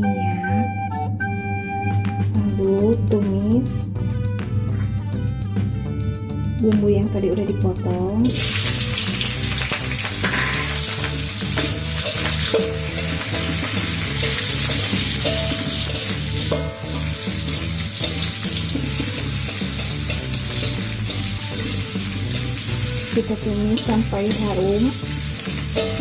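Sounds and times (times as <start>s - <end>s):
background music with bass line: 0.0s - 26.0s
vegetables sizzling in hot oil: 8.3s - 26.0s
stirring in a pan: 9.2s - 26.0s.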